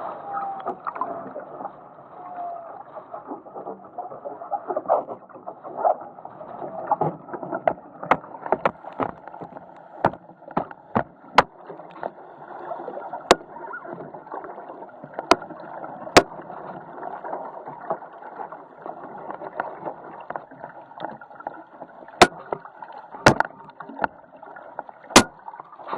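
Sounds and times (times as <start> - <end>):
water rushing around hull: 0.0 - 25.9
wind: 0.0 - 25.9
sharp knocks and clicks: 7.6 - 11.6, 22.2 - 22.6, 23.2 - 24.2, 25.2 - 25.4.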